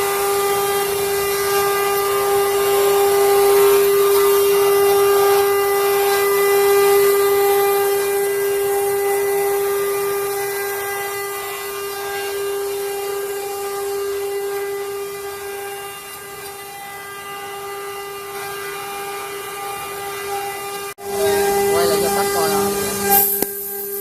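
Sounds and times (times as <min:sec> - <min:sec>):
router spindle whining: 0:00.0 - 0:24.0.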